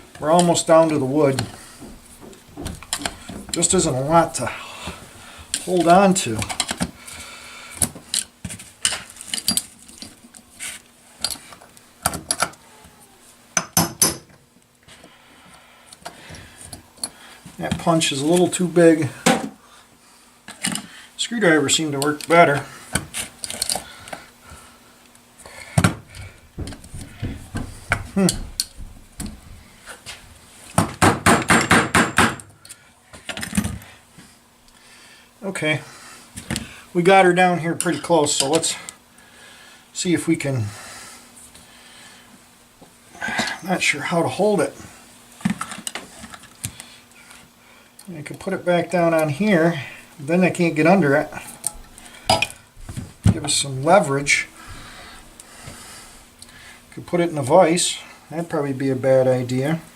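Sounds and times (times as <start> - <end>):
hammer tapping on metal punch: 13.6 - 14.2.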